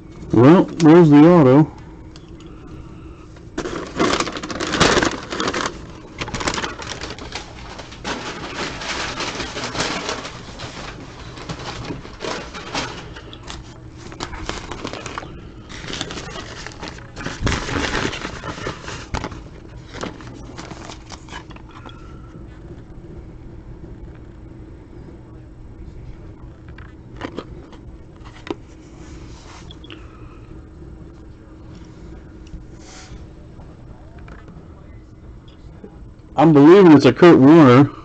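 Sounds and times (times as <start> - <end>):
faint steady hum: 0.0 - 38.0
plastic packaging crinkling: 3.6 - 22.1.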